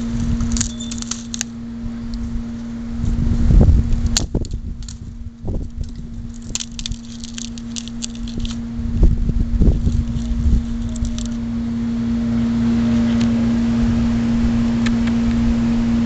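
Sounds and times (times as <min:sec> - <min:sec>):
crackling and rustling: 0:00.0 - 0:11.4
steady low hum: 0:00.0 - 0:16.0
wind buffeting microphone: 0:01.8 - 0:11.5.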